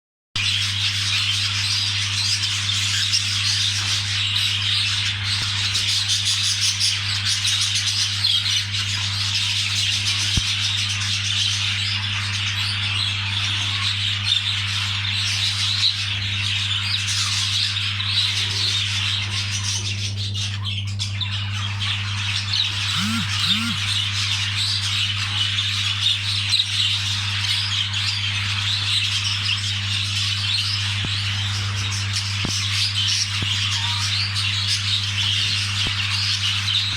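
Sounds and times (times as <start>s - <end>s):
budgerigars chattering: 22.3s - 24.1s
steady low hum: 22.8s - 24.0s.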